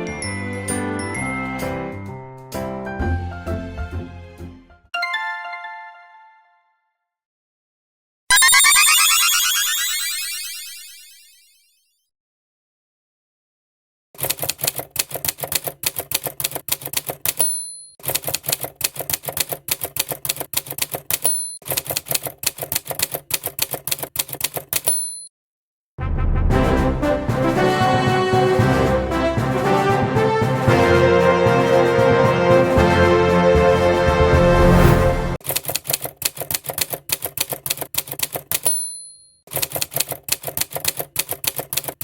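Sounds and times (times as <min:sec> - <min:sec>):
music: 0:00.0 - 0:07.0, 0:26.0 - 0:35.4
typewriter key clicks: 0:14.2 - 0:25.3, 0:35.4 - 0:42.0
typewriter bell ding: 0:17.3 - 0:18.0, 0:21.2 - 0:21.6, 0:24.8 - 0:25.3, 0:38.4 - 0:40.0.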